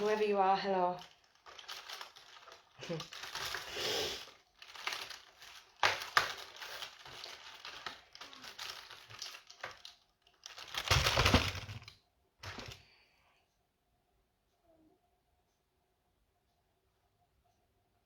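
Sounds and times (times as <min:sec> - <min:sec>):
wrapper crinkling and rustling: 0:00.0 - 0:12.8.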